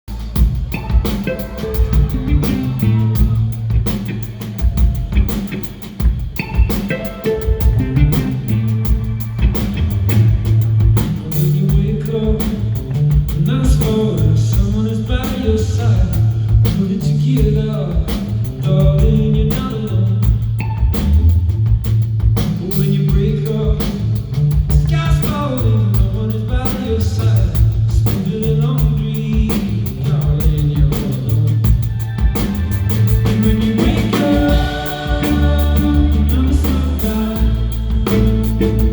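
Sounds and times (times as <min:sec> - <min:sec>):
bass line: 0:00.0 - 0:38.9
drums beating: 0:00.0 - 0:38.9
person singing: 0:00.7 - 0:05.1, 0:33.1 - 0:38.9.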